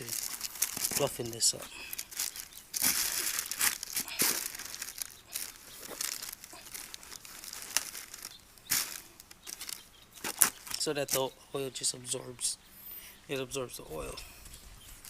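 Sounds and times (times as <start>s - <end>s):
absorbent filling crinkling: 0.0s - 11.4s.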